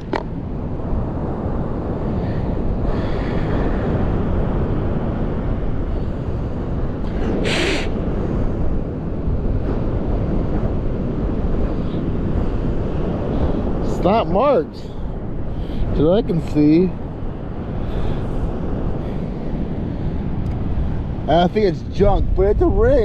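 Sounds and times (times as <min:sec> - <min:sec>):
wind buffeting microphone: 0:00.0 - 0:23.0
brief hiss: 0:07.4 - 0:07.9.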